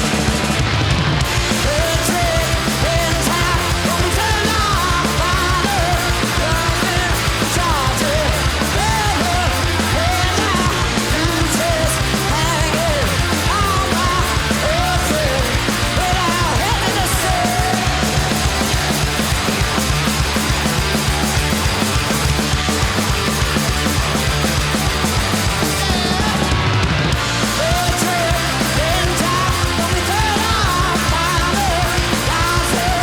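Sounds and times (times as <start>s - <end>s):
rock band jamming: 0.0s - 33.0s.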